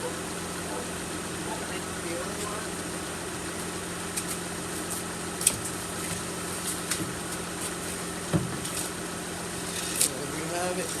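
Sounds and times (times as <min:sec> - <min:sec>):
car engine idling: 0:00.0 - 0:11.0
dull knock: 0:08.3 - 0:08.6.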